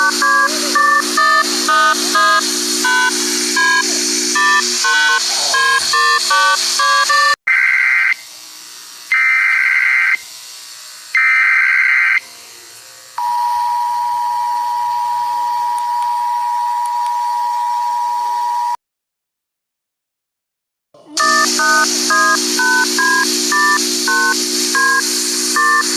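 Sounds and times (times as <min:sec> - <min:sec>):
melodic beeps: 0:00.0 - 0:07.4
two-tone attention signal: 0:00.0 - 0:07.4, 0:21.2 - 0:25.9
warbling data tones: 0:00.0 - 0:07.4, 0:21.2 - 0:25.9.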